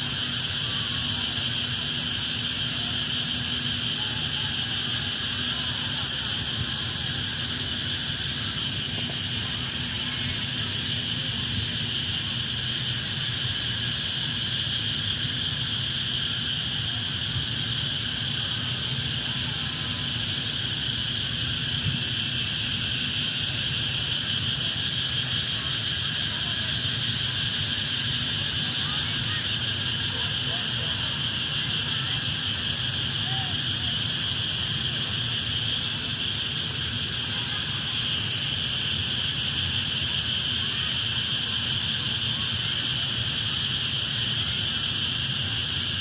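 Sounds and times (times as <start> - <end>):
insects buzzing: 0.0 - 46.0.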